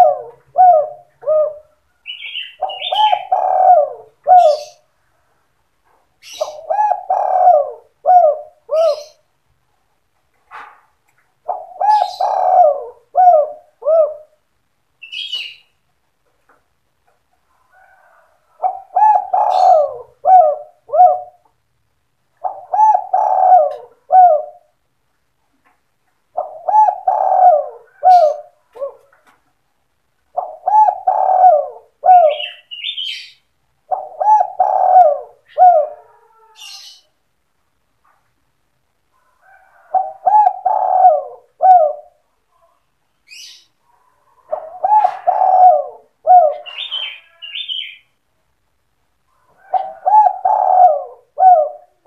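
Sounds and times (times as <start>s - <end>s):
dove cooing: 0.0s - 4.9s, 6.2s - 9.3s, 11.4s - 14.4s, 17.7s - 21.6s, 22.3s - 24.8s, 26.3s - 29.3s, 30.3s - 37.1s, 39.2s - 48.0s, 49.4s - 52.0s
faint small bird chirps: 15.0s - 15.8s, 42.5s - 44.1s, 46.6s - 48.1s.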